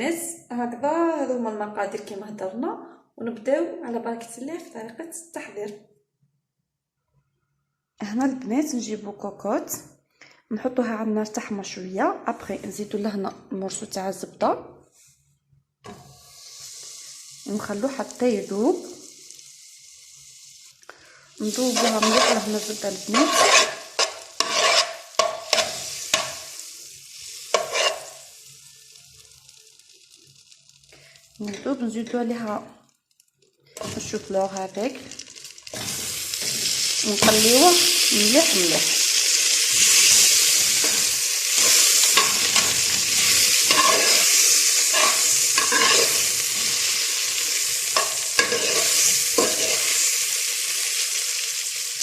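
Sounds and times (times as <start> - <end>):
butter sizzling: 15.9 - 52.0
utensil scraping a pot: 21.5 - 26.4, 27.5 - 28.2, 39.9 - 46.9, 48.0 - 50.0.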